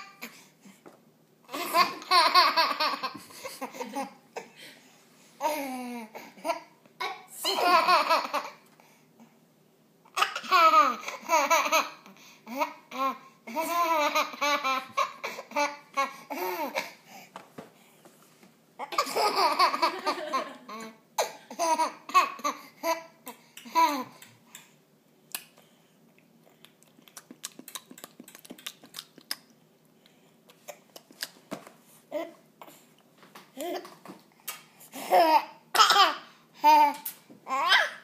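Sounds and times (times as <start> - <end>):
baby giggling: 18.8 - 24.2.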